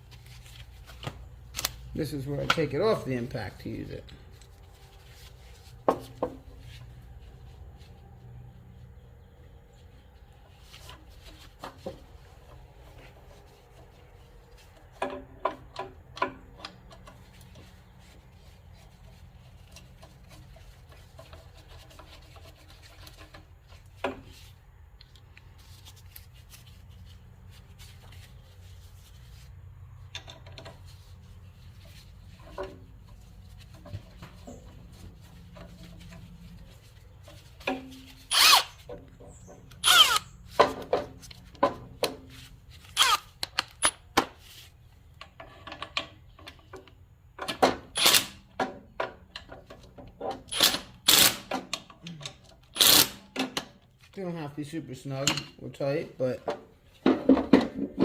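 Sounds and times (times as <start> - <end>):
metal clicks and knocks: 14.8 - 17.6, 30.1 - 30.9.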